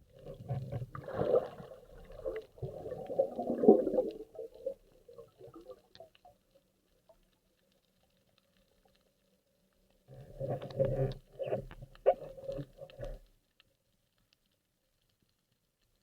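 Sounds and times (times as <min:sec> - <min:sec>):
underwater gurgling and bubbling: 0:00.0 - 0:06.0, 0:10.1 - 0:13.3.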